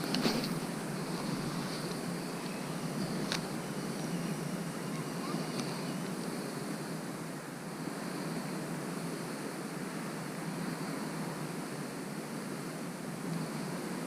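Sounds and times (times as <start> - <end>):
wind on microphone: 0.0 - 9.2.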